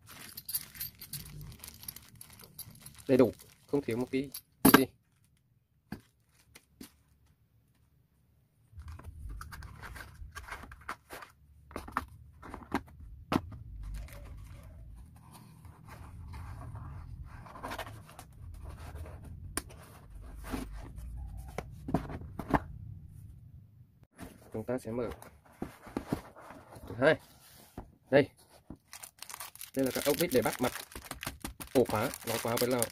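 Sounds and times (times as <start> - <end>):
packaging rustling and crinkling: 0.0 - 4.3, 28.8 - 32.9.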